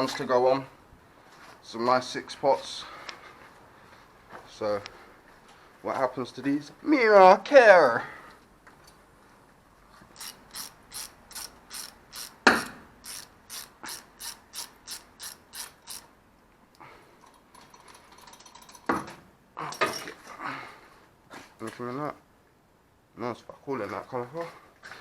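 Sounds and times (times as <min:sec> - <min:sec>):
ratchet wrench clicking: 0:10.2 - 0:16.1.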